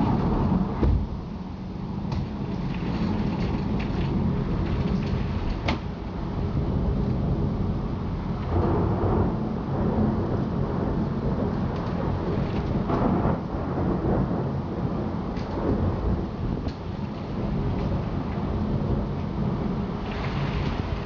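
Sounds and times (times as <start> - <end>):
thunder rumbling: 0.0 - 21.0.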